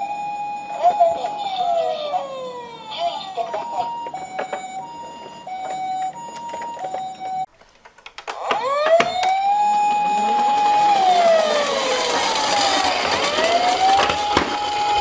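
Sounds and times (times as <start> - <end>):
electronic two-tone siren: 0.0 - 7.5, 8.4 - 15.0
rising wailing siren: 0.0 - 7.5, 8.3 - 15.0.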